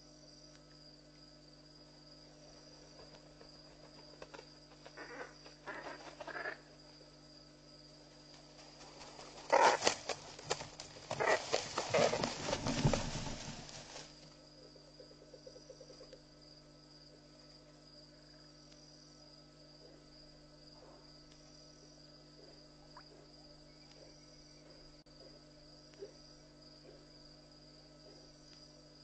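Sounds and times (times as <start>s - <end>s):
crickets chirping: 0.0s - 29.0s
loud noisy scuffling: 8.6s - 14.2s.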